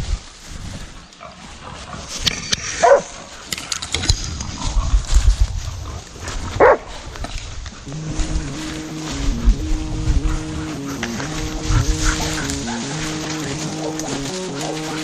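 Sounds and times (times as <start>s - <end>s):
rustling: 0.0s - 15.0s
dogs barking: 2.8s - 3.3s, 6.5s - 7.0s, 10.2s - 15.0s
low thumping: 7.9s - 14.3s.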